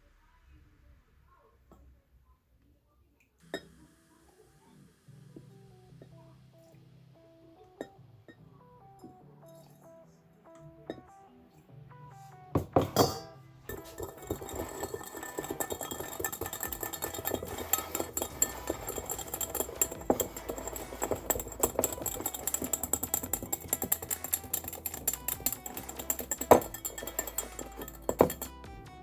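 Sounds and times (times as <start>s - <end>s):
background music: 3.6s - 29.0s
spoon clattering against bowl: 12.6s - 28.6s.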